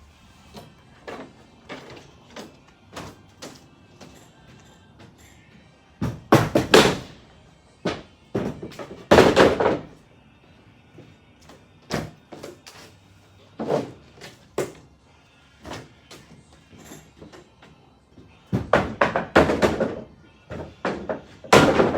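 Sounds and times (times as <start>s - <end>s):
objects thudding and knocking: 0.5s - 5.4s, 6.0s - 7.2s, 7.8s - 10.0s, 13.6s - 14.8s, 18.2s - 21.9s.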